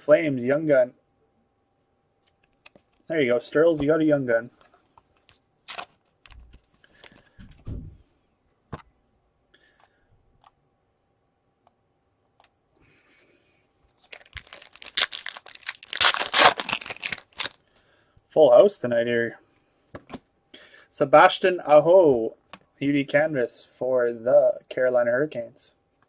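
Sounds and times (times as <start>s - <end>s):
card wrappers crinkling and tearing: 14.0s - 17.6s.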